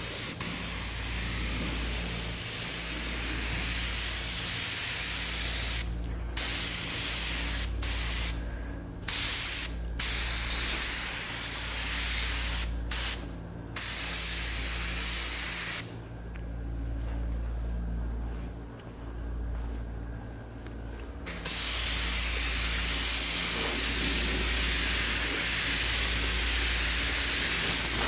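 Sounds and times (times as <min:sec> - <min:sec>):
spray gun hissing: 0:00.0 - 0:08.4, 0:09.1 - 0:15.9, 0:21.3 - 0:28.0
steady low hum: 0:00.0 - 0:28.0.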